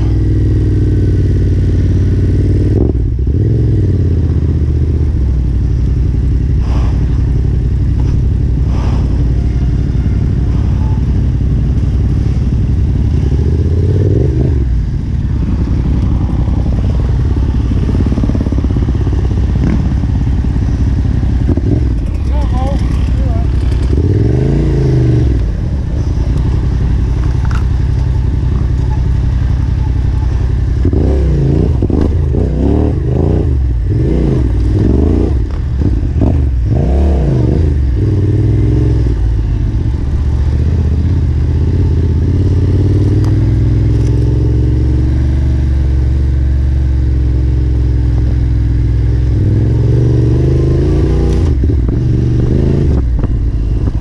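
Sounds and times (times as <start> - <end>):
motorcycle engine revving: 0.0 - 54.0
motorcycle knocks and clatter: 17.9 - 20.2.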